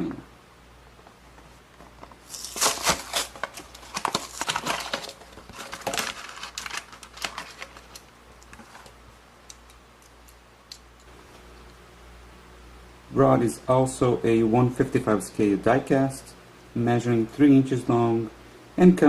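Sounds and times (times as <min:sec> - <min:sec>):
plastic crinkling and clicking: 0:01.8 - 0:10.8.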